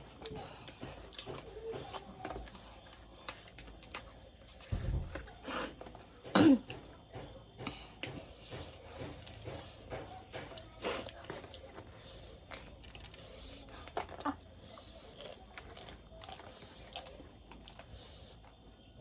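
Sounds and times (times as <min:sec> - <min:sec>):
throat-clearing cough: 0:06.3 - 0:06.8
person eating: 0:07.6 - 0:18.7.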